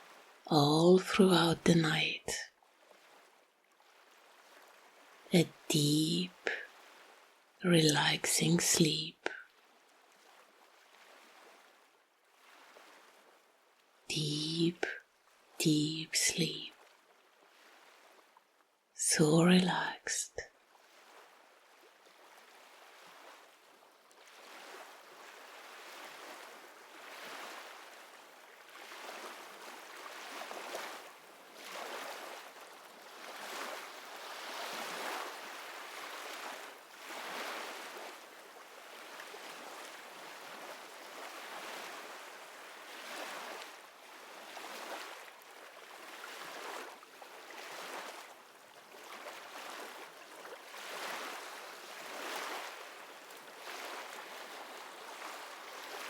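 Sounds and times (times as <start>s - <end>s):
ocean waves washing ashore: 19.0s - 56.0s.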